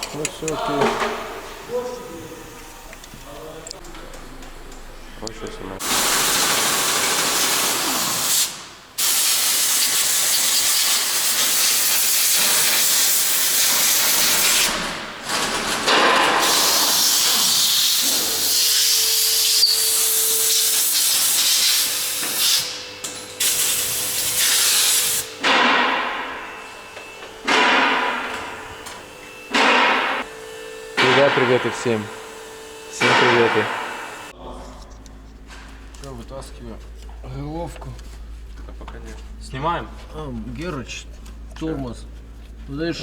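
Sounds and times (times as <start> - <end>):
loud hiss of air or spray: 5.8 - 14.8, 16.4 - 22.8, 23.4 - 25.4.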